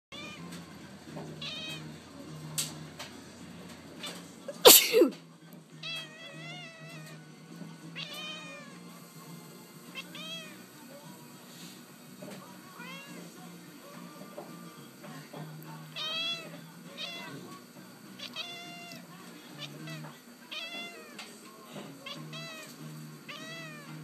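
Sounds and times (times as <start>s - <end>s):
cat meowing and chirping: 0.1s - 0.5s, 1.4s - 1.9s, 5.8s - 7.2s, 8.0s - 8.8s, 10.0s - 10.6s, 15.9s - 17.4s, 18.2s - 21.2s, 22.0s - 24.0s
person sneezing: 4.5s - 5.2s.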